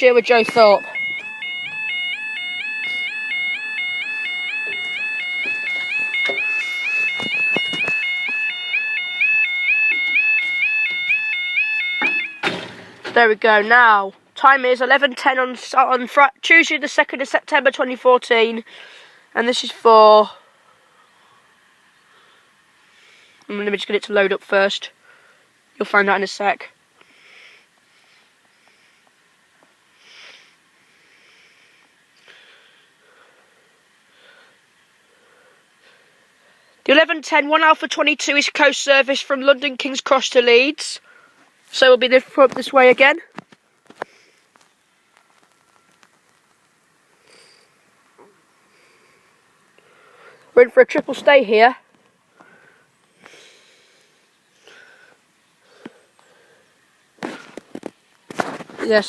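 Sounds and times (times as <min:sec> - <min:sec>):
breathing and sniffing: 0:18.6 - 0:19.3, 0:27.0 - 0:36.8, 0:47.1 - 0:47.8, 0:48.6 - 0:50.5, 0:52.3 - 0:57.6.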